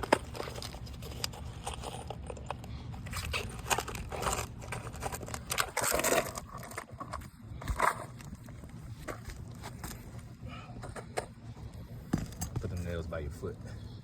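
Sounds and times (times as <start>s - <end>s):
shingles scraping and crinkling: 0.0s - 11.2s.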